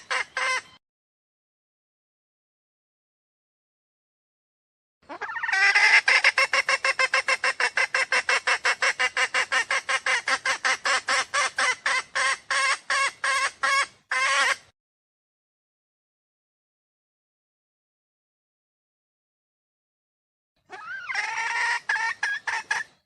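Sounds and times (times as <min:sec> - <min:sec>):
junglefowl harsh clucks: 0:00.0 - 0:00.8, 0:05.0 - 0:14.7, 0:20.7 - 0:23.0.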